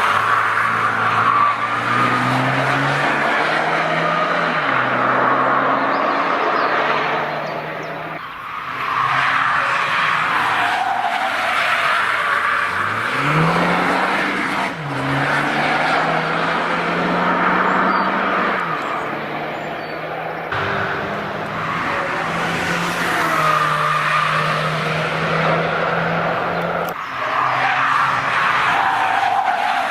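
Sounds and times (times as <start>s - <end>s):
car engine revving: 0.0s - 29.9s
tyre and road noise: 0.0s - 29.9s.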